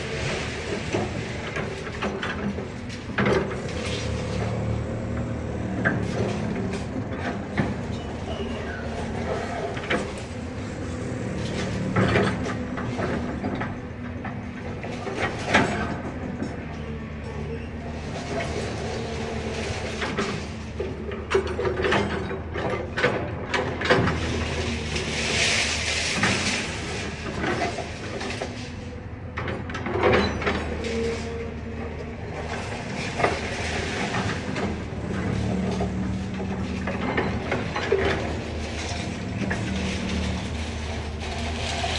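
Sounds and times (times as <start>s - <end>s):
demolition clanks and crunches: 0.0s - 41.9s
excavator diesel engine running: 0.0s - 41.9s
brief machine squeal: 7.9s - 9.6s
metallic knocks and scrapes: 32.4s - 41.9s.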